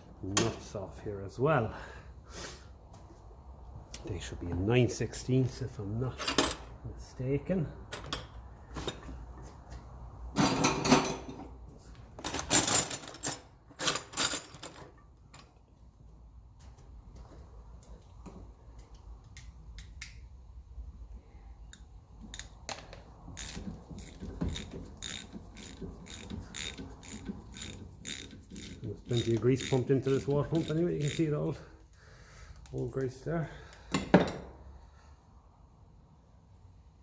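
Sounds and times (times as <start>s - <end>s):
metallic clatter of tools: 23.4s - 31.3s
socket ratchet clicking: 23.4s - 31.3s.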